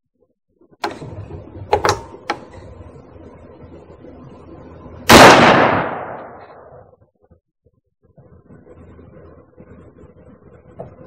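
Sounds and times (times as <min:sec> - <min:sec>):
loud rifle shot: 0:05.1 - 0:06.8.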